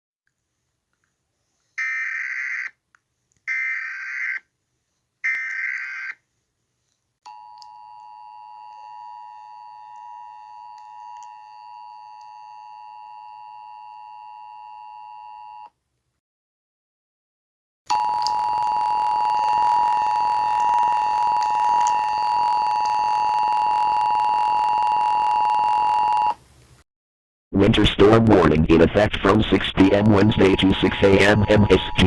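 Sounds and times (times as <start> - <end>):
steady two-tone alert signal: 30.1 - 32.0
digital data tone bursts: 30.3 - 32.0.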